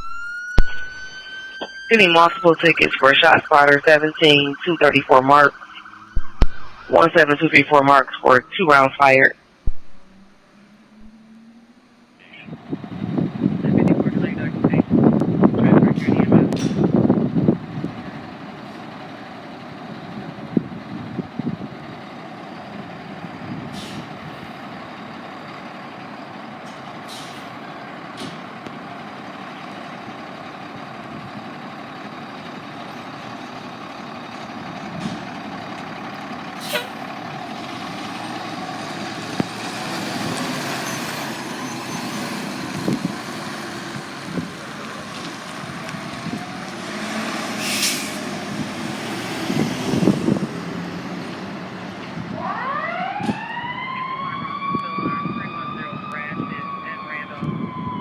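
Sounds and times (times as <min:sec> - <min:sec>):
heavy truck engine running: 0:00.0 - 0:54.0
short sharp hisses: 0:36.6 - 0:37.0, 0:47.6 - 0:48.2.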